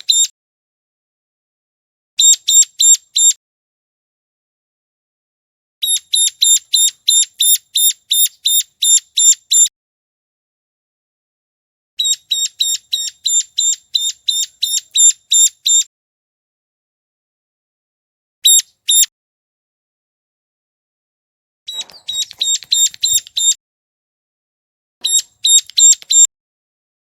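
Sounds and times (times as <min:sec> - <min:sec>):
bird calling sharp high notes: 0:21.7 - 0:23.6, 0:25.0 - 0:26.3.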